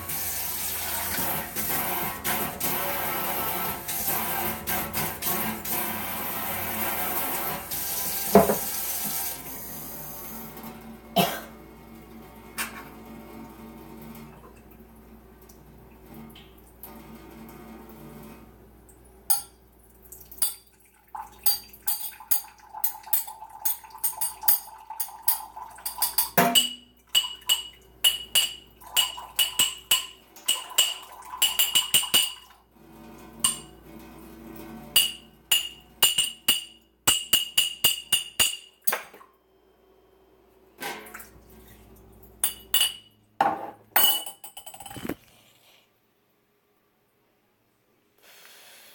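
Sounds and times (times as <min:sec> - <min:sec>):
water splashing and sloshing: 0:40.8 - 0:42.4.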